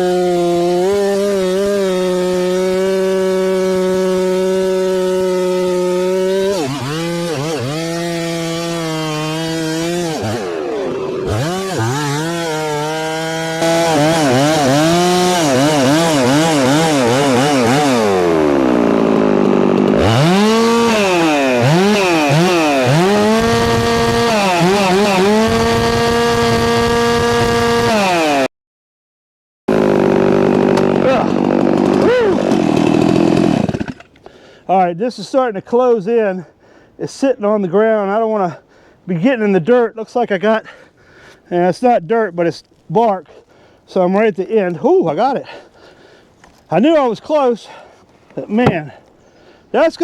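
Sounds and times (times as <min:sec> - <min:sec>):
chainsaw cutting log: 0:00.0 - 0:28.5, 0:29.7 - 0:34.5, 0:44.6 - 0:50.0.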